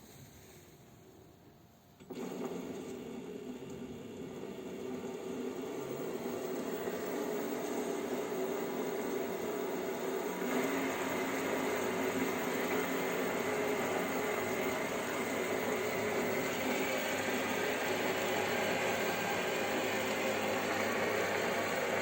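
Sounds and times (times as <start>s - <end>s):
metal lathe motor and gear hum: 2.1s - 22.0s.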